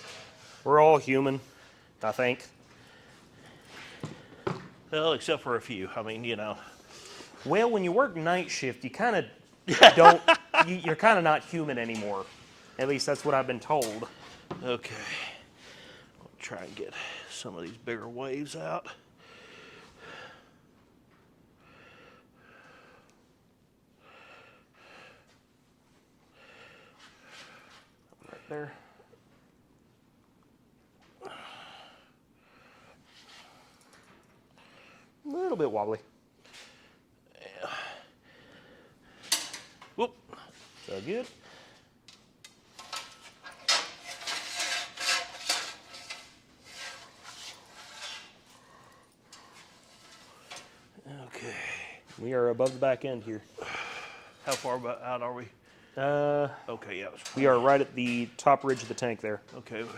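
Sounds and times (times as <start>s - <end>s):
man breathing heavily: 2.7s - 4.7s, 15.0s - 16.2s, 19.2s - 20.6s, 24.0s - 25.4s, 26.3s - 29.1s, 31.2s - 35.2s, 36.6s - 39.4s, 48.5s - 49.8s, 53.5s - 54.4s
metal line scraping: 42.8s - 48.6s, 49.3s - 50.8s.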